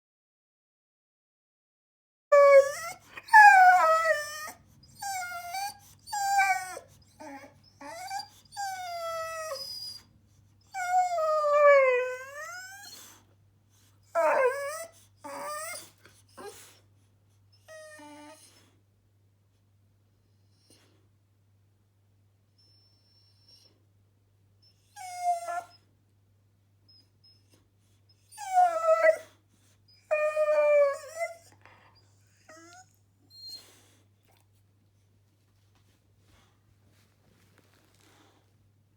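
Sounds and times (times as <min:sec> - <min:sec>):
dog whining: 0:02.3 - 0:10.1, 0:10.7 - 0:13.2, 0:14.1 - 0:16.8, 0:17.6 - 0:18.7, 0:24.6 - 0:25.8, 0:28.2 - 0:33.9.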